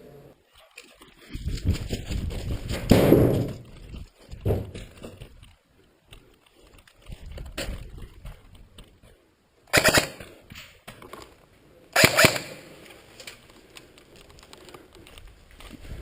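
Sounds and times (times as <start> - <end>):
airsoft rifle firing bursts: 9.7 - 10.3, 12.0 - 12.7.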